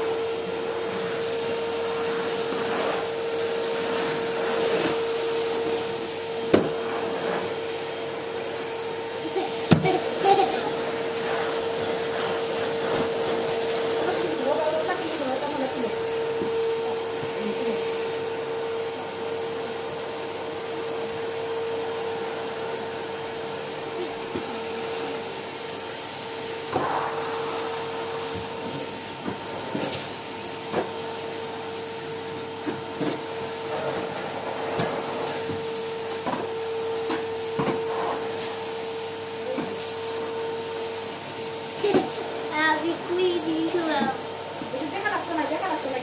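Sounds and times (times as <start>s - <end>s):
vacuum cleaner motor whine: 0.0s - 46.0s
cleaning head knocking: 9.7s - 10.0s.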